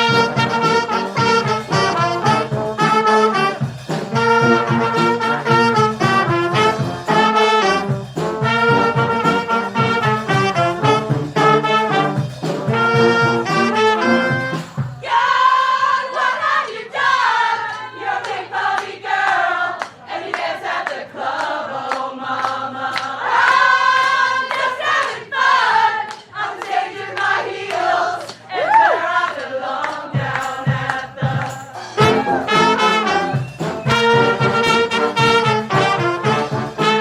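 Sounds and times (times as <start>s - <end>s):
brass band playing: 0.0s - 15.0s, 30.2s - 37.0s
group of voices singing: 13.0s - 37.0s.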